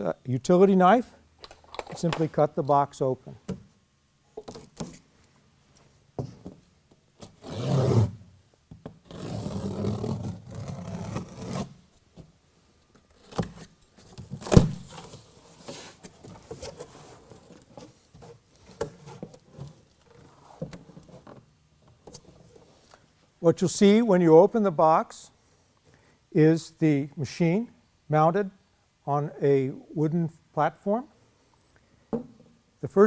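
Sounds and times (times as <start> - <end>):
knife cutting cardboard: 9.0 - 11.8
cardboard scraping and clicking: 13.2 - 21.4.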